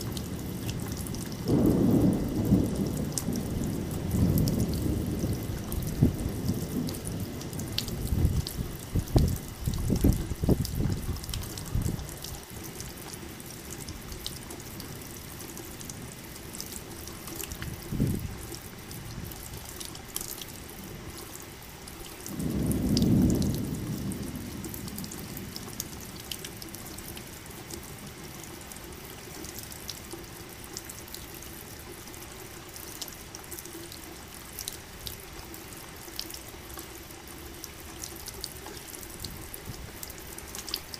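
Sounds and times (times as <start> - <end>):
rain hiss: 0.0 - 40.9
water drips: 0.0 - 40.9
rolling thunder: 0.2 - 12.3, 17.6 - 18.4, 22.2 - 26.4.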